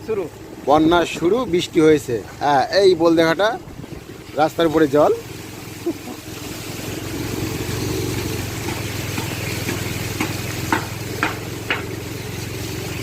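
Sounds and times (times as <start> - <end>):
small engine running: 4.6 - 13.0.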